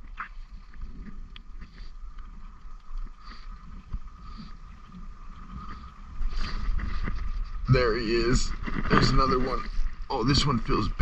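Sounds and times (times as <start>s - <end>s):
faint clicks: 0.0s - 7.5s
wind rumble on microphone: 0.0s - 11.0s.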